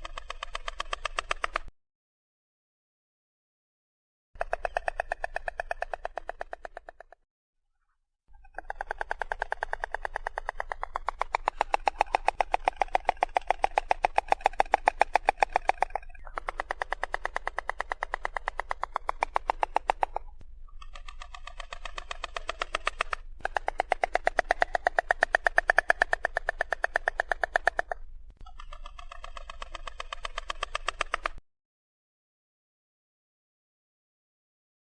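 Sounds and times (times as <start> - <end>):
stork bill clattering: 8.5 - 31.4.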